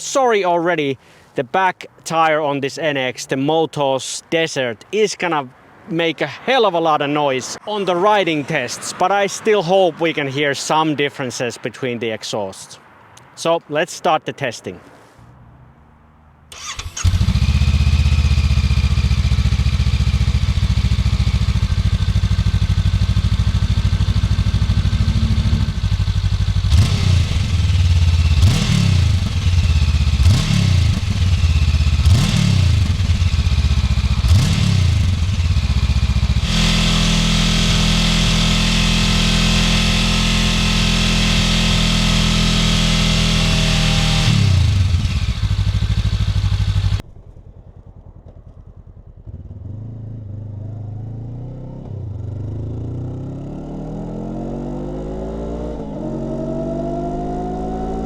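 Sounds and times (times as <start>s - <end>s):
motorcycle engine idling and revving: 16.5s - 58.0s.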